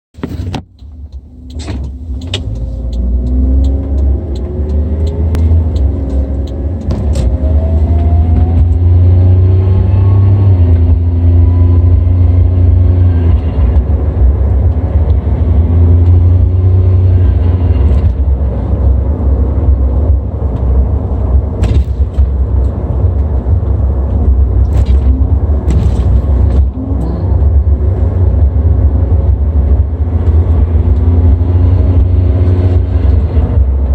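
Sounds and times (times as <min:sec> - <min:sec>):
engine running with low rumble: 0:00.2 - 0:33.9.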